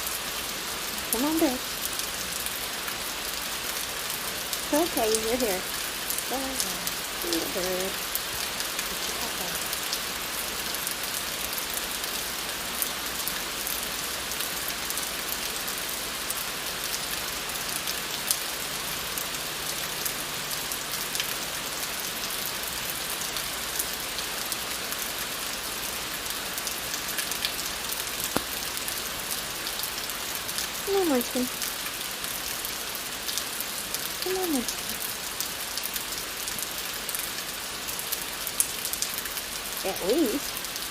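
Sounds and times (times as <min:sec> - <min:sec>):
rain on hard surfaces: 0:00.0 - 0:40.9.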